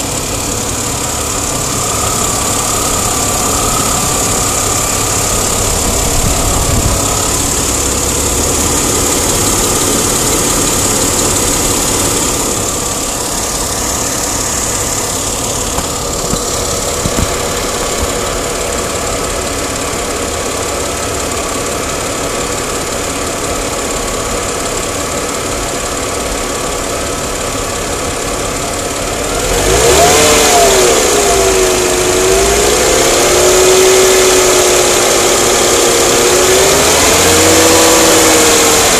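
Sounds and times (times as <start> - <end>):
car engine running: 0.0 - 38.9
engine ticking: 0.0 - 38.9.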